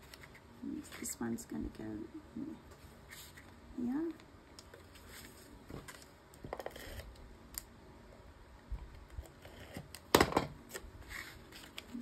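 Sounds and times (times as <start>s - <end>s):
paper rustling: 11.0s - 12.0s.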